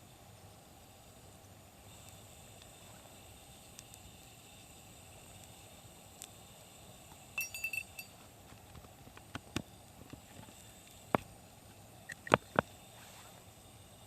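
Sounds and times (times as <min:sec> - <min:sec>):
faint steady hiss: 0:00.0 - 0:14.0
campfire crackling and popping: 0:00.4 - 0:13.5
metallic clink: 0:07.4 - 0:08.2.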